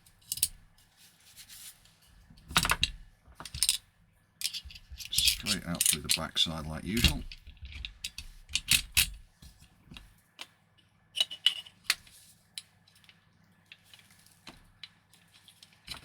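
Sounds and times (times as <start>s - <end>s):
metal clicks of rifle parts: 0.2s - 0.6s, 4.4s - 9.2s.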